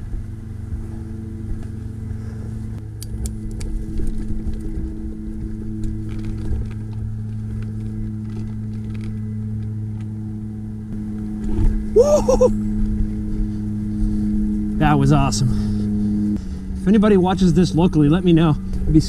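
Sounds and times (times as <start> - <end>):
rocks knocking and bike rattling: 3.4 - 10.1.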